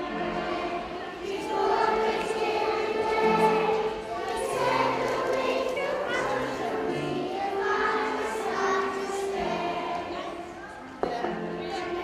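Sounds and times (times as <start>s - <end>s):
children singing: 0.0s - 12.0s.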